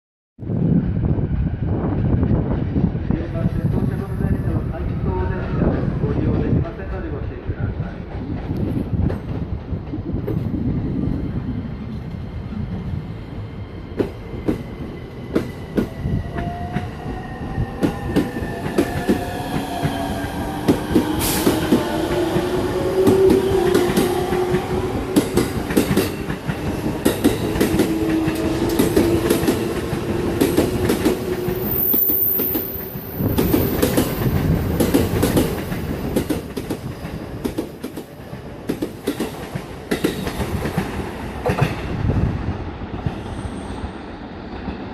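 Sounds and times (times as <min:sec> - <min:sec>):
train wheels clicking over rail joints: 0:17.8 - 0:42.0.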